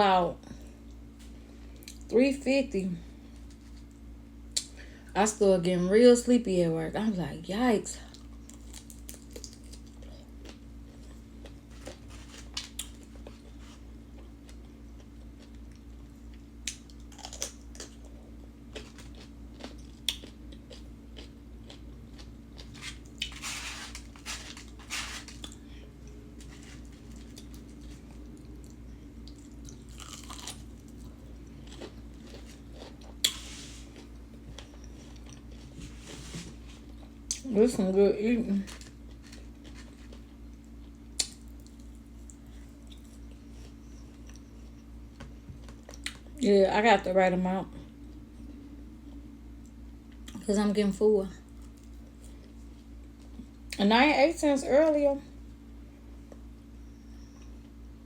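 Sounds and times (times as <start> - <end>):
steady low hum: 0.0 - 58.0
person chewing crunchy food: 8.1 - 37.5, 38.7 - 46.4.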